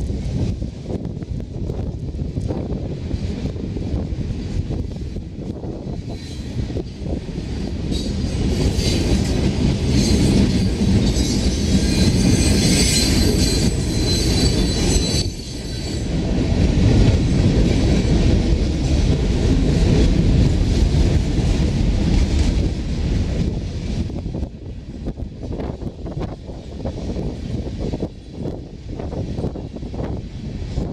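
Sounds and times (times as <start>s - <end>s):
train wheels rumbling and clicking: 0.0s - 30.9s
high wheel squeal: 9.8s - 16.1s.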